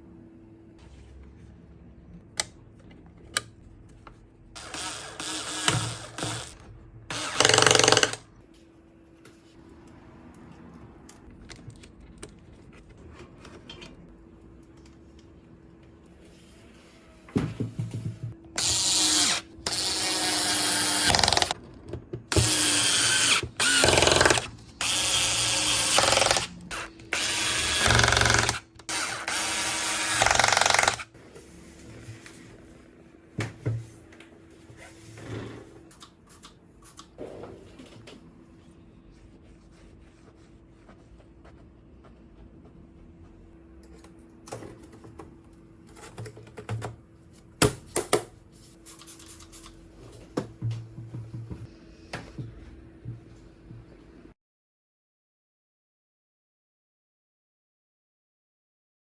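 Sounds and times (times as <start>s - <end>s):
handheld power tool bursts: 18.6s - 21.6s, 22.3s - 31.1s.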